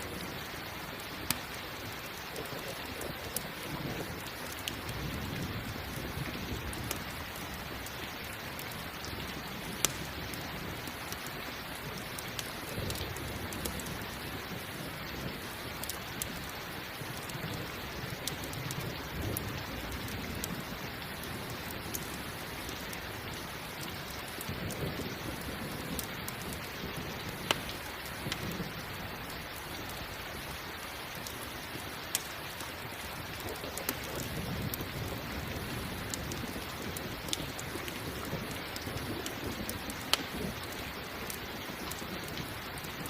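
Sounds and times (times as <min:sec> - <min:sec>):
campfire crackling and popping: 0:00.0 - 0:43.0
steady rain: 0:00.0 - 0:43.0
thunder rumbling: 0:08.5 - 0:30.5.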